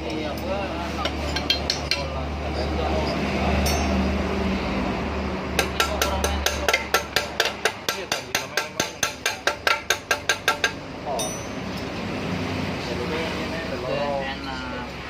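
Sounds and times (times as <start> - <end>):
hammer striking metal: 1.1 - 2.1, 3.6 - 4.2, 5.6 - 11.8.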